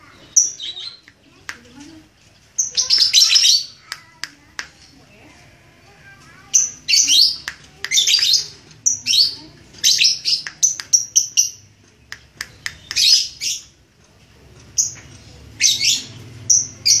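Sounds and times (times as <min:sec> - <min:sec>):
lovebird chirping: 0:14.8 - 0:17.0.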